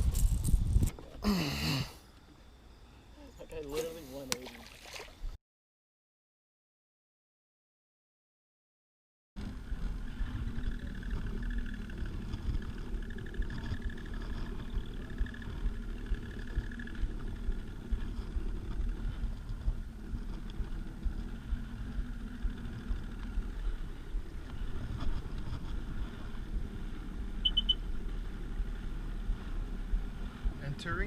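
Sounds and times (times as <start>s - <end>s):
steady whine: 9.4s - 31.0s
watercraft engine running: 9.4s - 31.0s.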